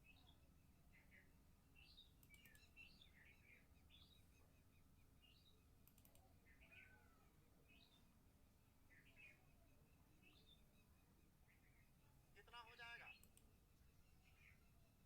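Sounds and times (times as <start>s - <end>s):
small birds chirping: 0.0s - 15.0s
faint clicks: 2.1s - 2.8s, 5.8s - 6.4s, 13.1s - 13.6s.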